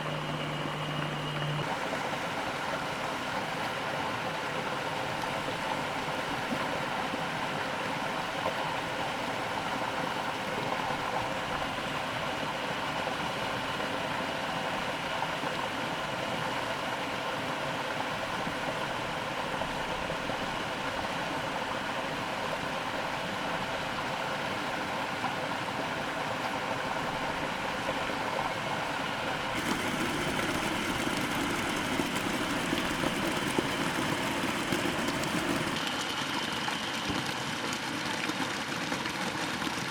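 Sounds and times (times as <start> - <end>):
steady motor hum: 0.0 - 39.6
rushing water-like noise: 1.3 - 39.9.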